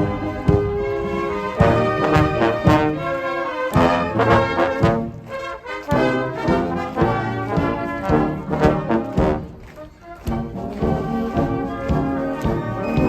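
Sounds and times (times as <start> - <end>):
steady drum beat: 0.0 - 3.2, 3.8 - 9.6
marching band playing: 0.0 - 13.0.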